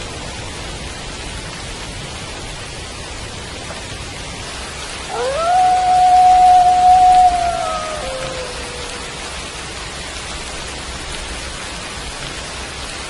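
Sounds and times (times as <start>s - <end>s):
steady rain falling: 0.0s - 13.0s
wolf howling: 5.1s - 9.6s.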